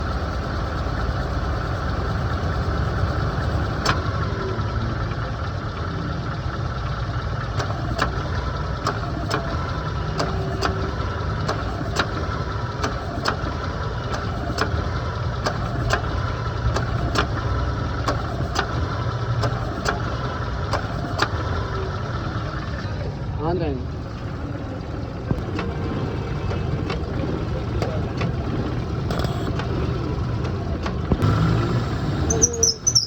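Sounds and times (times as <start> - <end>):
car engine idling: 0.0 - 33.0
ac compressor clicking: 7.5 - 21.4, 25.2 - 33.0.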